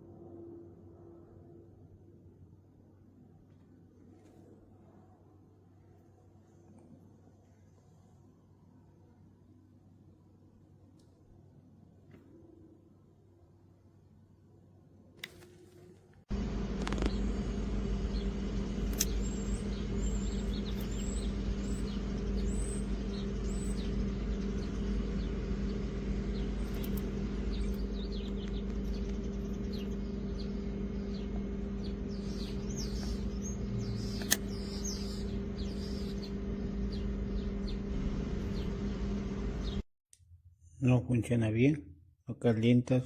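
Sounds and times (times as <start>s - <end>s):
low hum and rumble: 0.0s - 42.8s
small birds chirping: 16.8s - 39.8s
sharp click: 18.9s - 19.4s, 34.1s - 35.0s.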